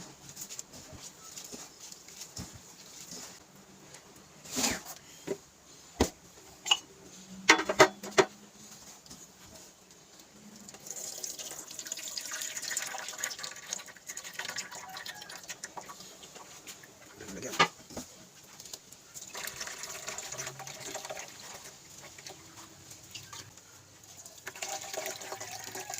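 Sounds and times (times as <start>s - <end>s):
kitchen clatter: 7.5s - 8.4s
water running: 10.4s - 17.5s, 19.1s - 25.9s.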